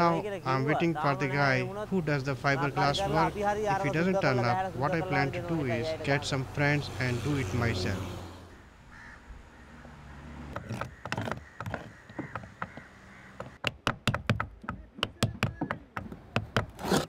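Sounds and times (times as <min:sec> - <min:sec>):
crows cawing: 0:08.5 - 0:13.6
sharp knocks or taps: 0:10.6 - 0:16.7.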